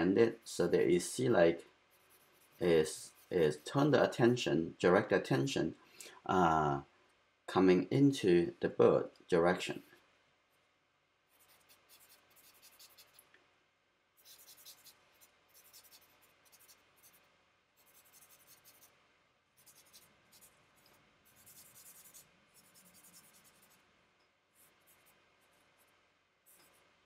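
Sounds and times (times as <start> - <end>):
charcoal scratching on paper: 1.9 - 4.4, 11.3 - 13.2, 14.2 - 17.2, 17.8 - 18.9, 19.6 - 23.8, 24.6 - 26.8.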